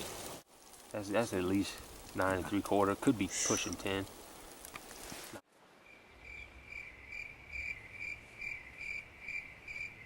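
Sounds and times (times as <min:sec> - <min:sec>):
cricket chirping: 0:05.9 - 0:10.0.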